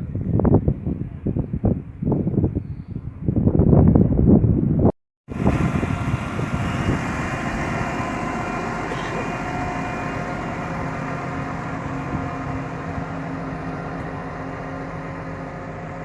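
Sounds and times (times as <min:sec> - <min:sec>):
diesel train engine droning: 0:05.3 - 0:16.0.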